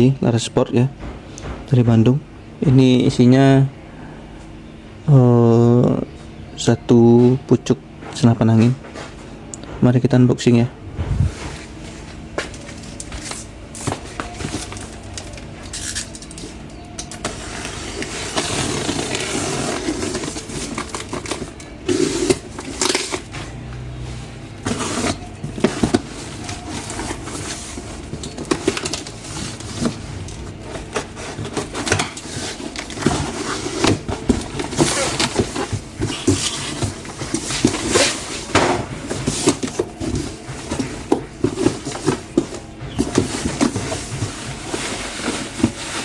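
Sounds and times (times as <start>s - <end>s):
cardboard scraping and rustling: 10.9s - 46.0s.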